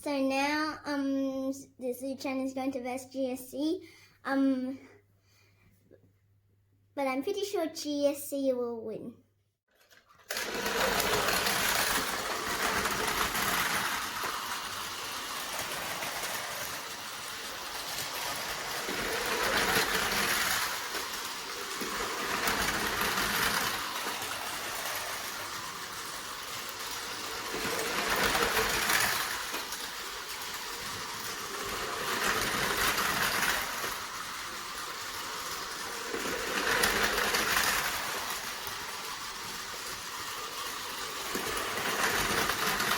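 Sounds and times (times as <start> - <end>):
toy trains rattling on track: 9.7 - 42.9.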